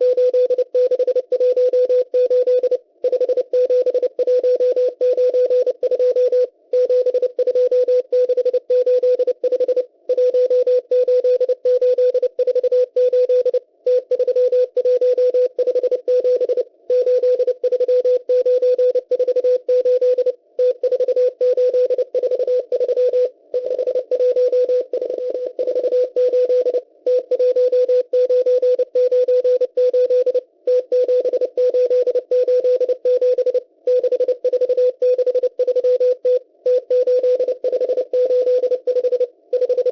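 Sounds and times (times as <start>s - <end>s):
morse code beeping tone: 0.0s - 39.9s.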